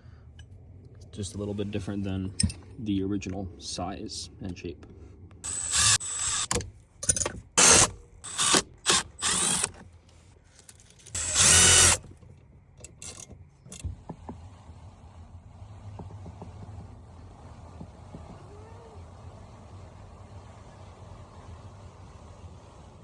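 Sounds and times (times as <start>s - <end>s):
power drill whining: 5.4s - 6.6s, 7.6s - 9.8s, 11.0s - 12.1s.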